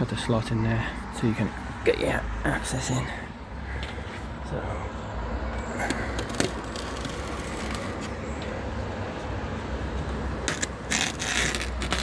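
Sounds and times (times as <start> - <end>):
blade cutting scratchy strokes: 10.5 - 12.0.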